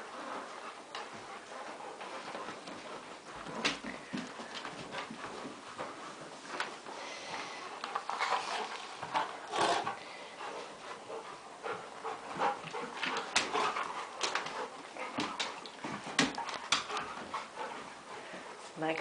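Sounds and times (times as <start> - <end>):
puppies growling and whimpering: 7.4 - 10.0.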